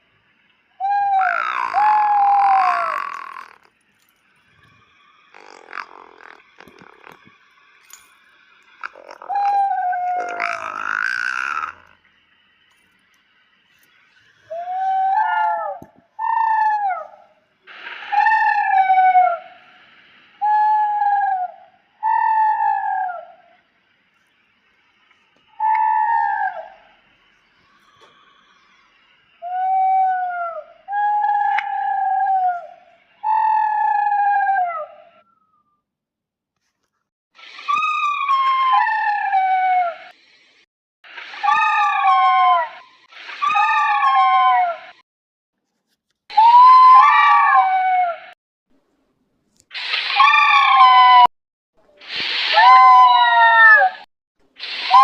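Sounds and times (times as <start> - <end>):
high hooting calls: 0.8 - 3.7, 4.5 - 7.3, 8.6 - 12.1, 13.8 - 23.7, 25.4 - 35.8, 37.4 - 40.2, 41.1 - 45.0, 49.7 - 51.3, 52.0 - 55.0
high whining creature cries: 0.8 - 3.7, 5.3 - 7.2, 8.8 - 12.0, 14.5 - 17.1, 37.6 - 40.1, 41.3 - 45.0, 46.3 - 48.4, 49.8 - 51.3, 52.4 - 55.0.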